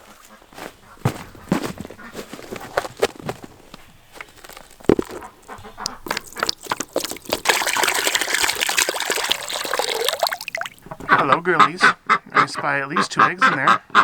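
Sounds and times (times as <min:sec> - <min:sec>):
water pouring: 0:04.1 - 0:11.2.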